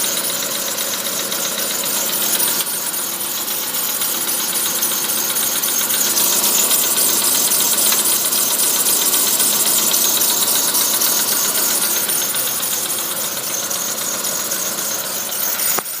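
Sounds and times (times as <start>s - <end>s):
car engine running: 0.0s - 16.0s.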